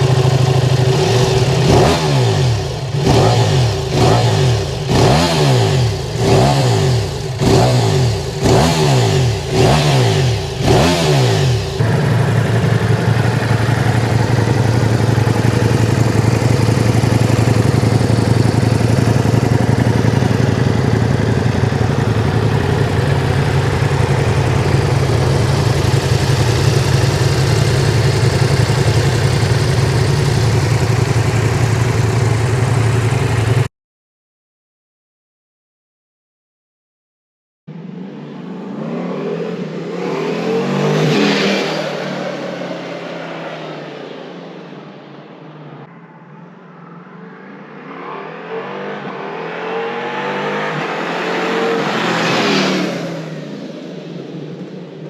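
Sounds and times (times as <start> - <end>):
motorcycle engine idling: 0.0 - 33.7
motorcycle engine revving: 0.0 - 33.7.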